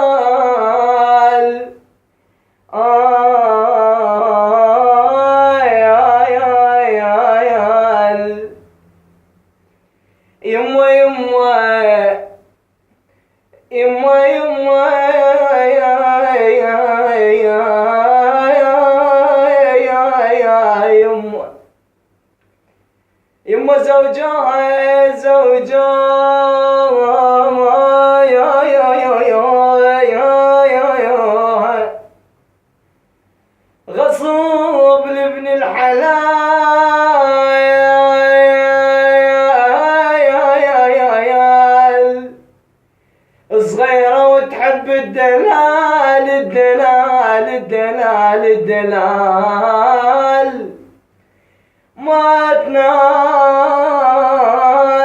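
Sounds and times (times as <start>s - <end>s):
man singing unaccompanied: 0.0s - 2.0s, 2.6s - 9.0s, 10.4s - 12.6s, 13.5s - 21.8s, 23.4s - 32.3s, 33.8s - 42.6s, 43.4s - 51.0s, 51.9s - 55.0s
man singing a long held note: 2.7s - 9.0s, 33.9s - 42.5s, 43.5s - 50.9s.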